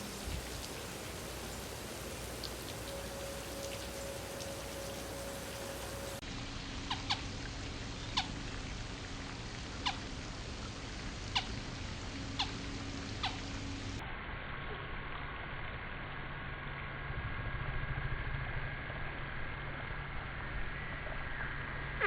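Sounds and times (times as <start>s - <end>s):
background hiss: 0.0s - 14.0s.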